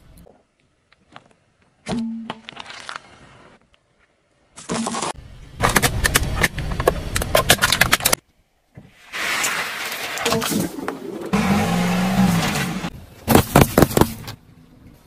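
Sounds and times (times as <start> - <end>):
car tyre crushing something crunchy: 1.0 - 3.6, 9.1 - 14.4.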